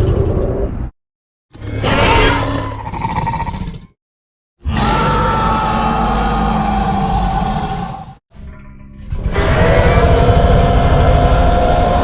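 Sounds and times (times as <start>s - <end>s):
dinosaur roar: 1.6s - 4.0s, 4.6s - 8.2s, 9.2s - 12.0s.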